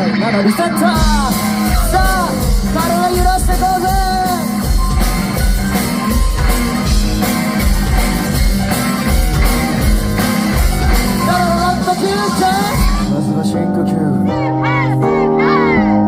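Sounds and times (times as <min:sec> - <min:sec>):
bass: 0:00.0 - 0:16.0
guitar: 0:00.0 - 0:16.0
drum kit beat: 0:00.7 - 0:13.4.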